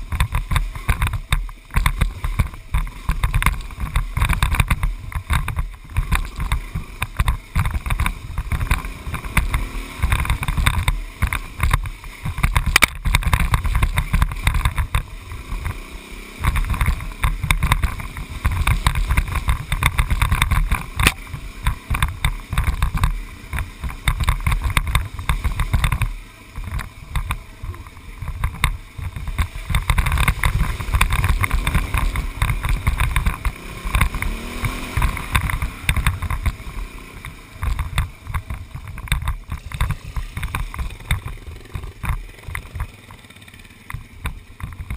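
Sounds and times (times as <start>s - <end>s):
vehicle driving on dirt road: 0.0s - 44.9s.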